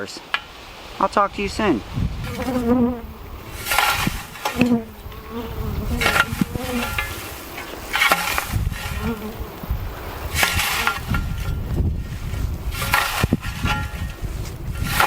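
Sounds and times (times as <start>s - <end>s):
honeybees buzzing: 2.2s - 11.8s.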